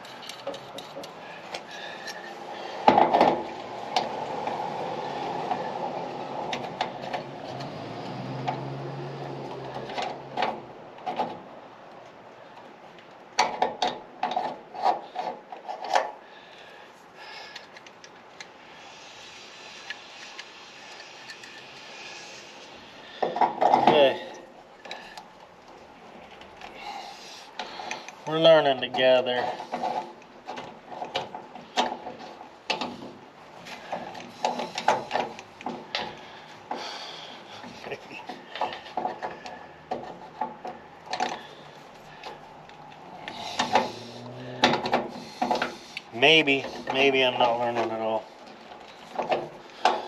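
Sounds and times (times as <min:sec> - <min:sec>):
hand tool clicking on metal parts: 0:00.0 - 0:02.3, 0:19.8 - 0:21.8
metal rubbing and scraping: 0:00.0 - 0:11.3, 0:26.0 - 0:50.0.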